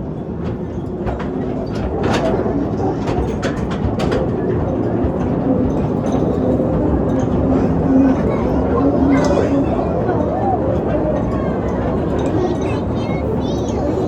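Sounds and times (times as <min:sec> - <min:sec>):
ride train rumbling on track: 0:00.0 - 0:14.0
wheels clacking on rails: 0:00.0 - 0:14.0.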